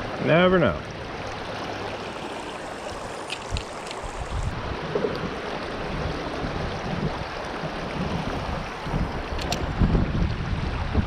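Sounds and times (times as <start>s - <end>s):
creek water running: 0.0s - 11.0s
wind buffeting microphone: 2.7s - 11.0s.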